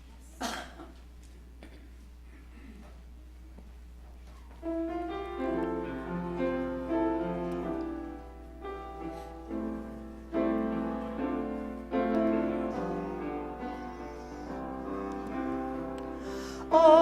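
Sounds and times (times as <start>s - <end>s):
low electrical hum: 0.0s - 17.0s
piano playing chords: 4.6s - 17.0s.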